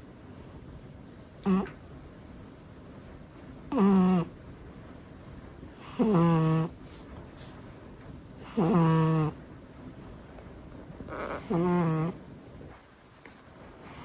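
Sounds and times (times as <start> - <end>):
cat snoring: 1.4 - 1.8, 3.7 - 4.4, 5.8 - 6.8, 8.4 - 9.4, 11.1 - 12.2, 13.8 - 14.0.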